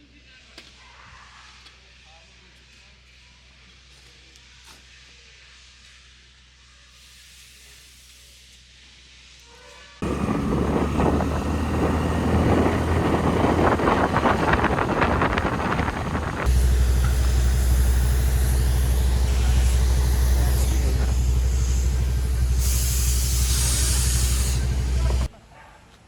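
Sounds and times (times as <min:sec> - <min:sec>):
hiss: 0:01.3 - 0:10.2, 0:16.4 - 0:25.3
low rumble: 0:10.0 - 0:25.3.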